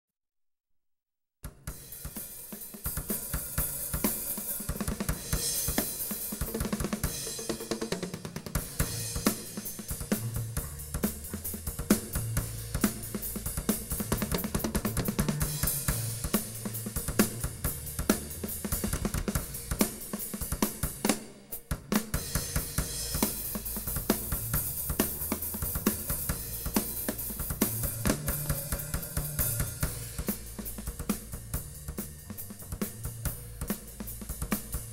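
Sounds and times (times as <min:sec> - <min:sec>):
drum kit groove: 0:01.4 - 0:34.9
low bass notes: 0:27.3 - 0:34.4.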